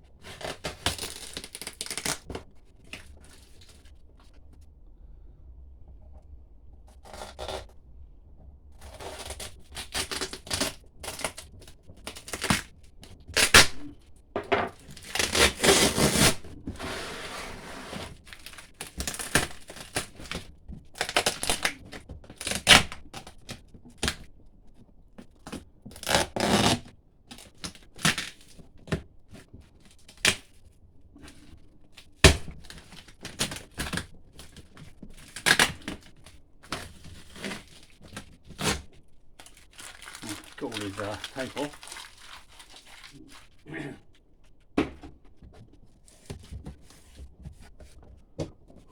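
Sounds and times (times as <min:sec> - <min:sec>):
duct tape ripping: 0:00.3 - 0:03.1, 0:09.0 - 0:14.0, 0:14.8 - 0:16.5, 0:18.3 - 0:20.4, 0:21.0 - 0:23.3, 0:26.0 - 0:26.9, 0:35.2 - 0:36.0
cardboard rustling: 0:14.8 - 0:20.2.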